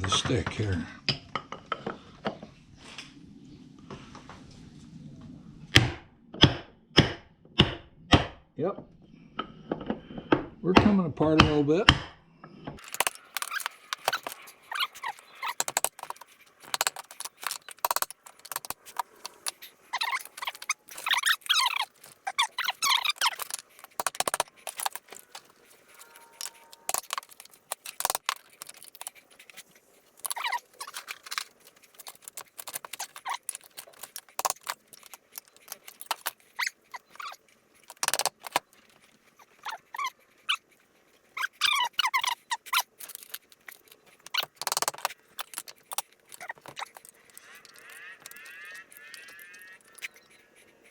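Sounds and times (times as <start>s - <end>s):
metal parts squeaking: 12.8s - 50.9s.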